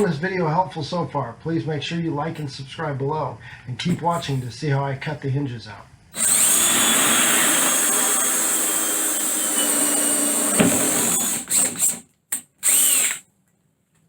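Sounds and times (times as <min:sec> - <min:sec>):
power drill cutting wood: 0:06.2 - 0:12.0, 0:12.6 - 0:13.2.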